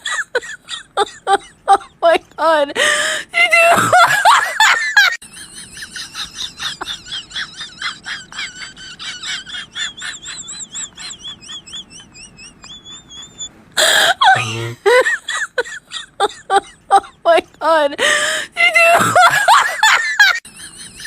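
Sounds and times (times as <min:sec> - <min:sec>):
loud burst of laughing: 0:03.8 - 0:16.4
squeaky pulsing laughter: 0:03.9 - 0:13.5, 0:18.9 - 0:21.0.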